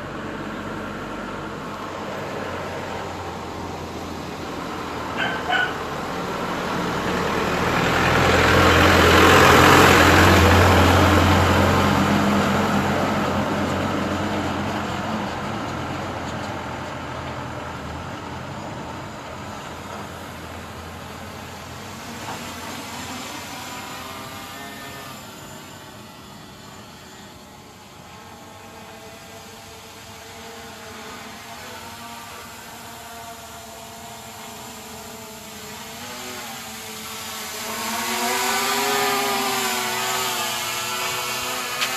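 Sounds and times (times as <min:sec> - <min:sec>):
truck engine passing by: 0:00.0 - 0:18.6.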